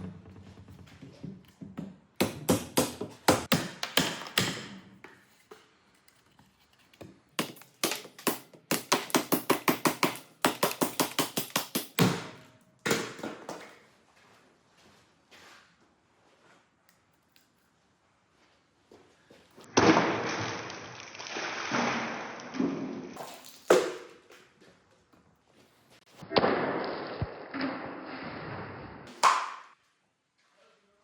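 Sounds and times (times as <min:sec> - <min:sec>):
knife chopping: 0:02.2 - 0:04.8, 0:07.4 - 0:12.2.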